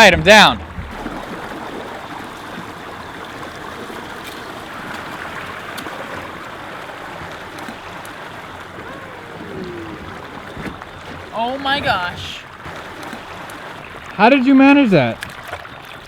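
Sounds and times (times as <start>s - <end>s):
faint clicks: 4.0s - 11.3s, 12.9s - 13.7s.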